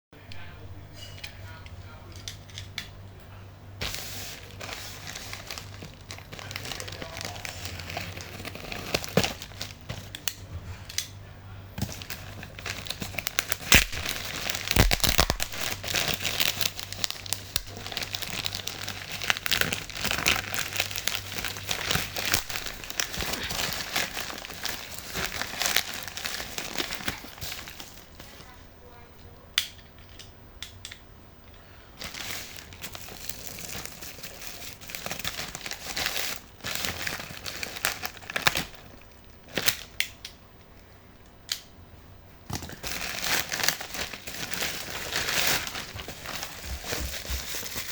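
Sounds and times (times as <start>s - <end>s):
packaging crinkling and tearing: 3.8s - 11.1s, 11.8s - 28.6s, 32.0s - 40.2s, 42.5s - 47.9s.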